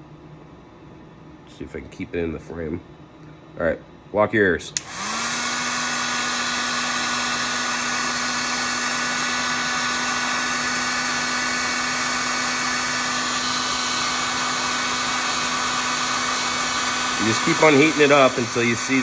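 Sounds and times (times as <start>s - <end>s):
heat gun fan hum: 0.0s - 19.0s.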